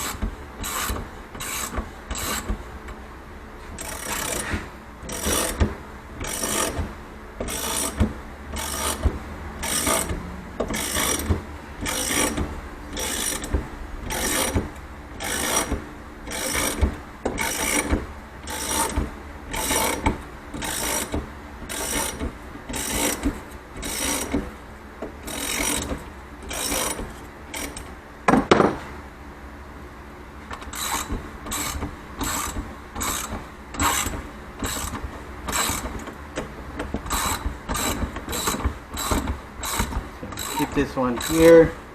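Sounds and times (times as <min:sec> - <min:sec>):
loud knock: 0:28.3 - 0:28.9.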